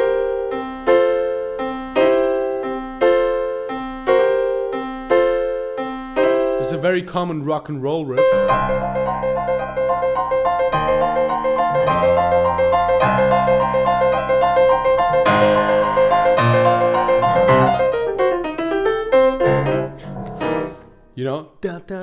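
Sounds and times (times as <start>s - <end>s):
rock and roll blues piano: 8.4s - 21.0s.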